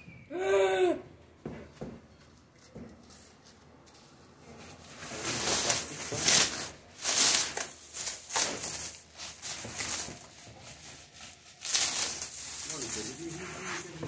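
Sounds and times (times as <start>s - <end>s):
packaging rustling and scraping: 3.0s - 14.0s.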